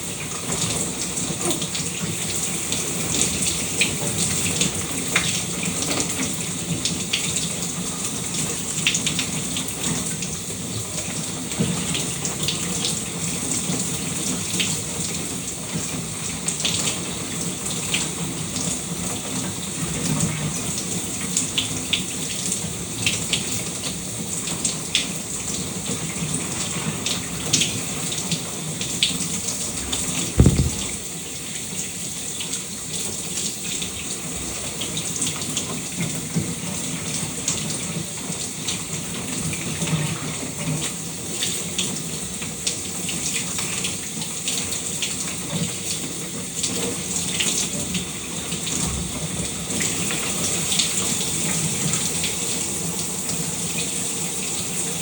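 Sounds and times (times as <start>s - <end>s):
dull thump: 30.4s - 31.0s
shower water splashing: 30.4s - 31.0s.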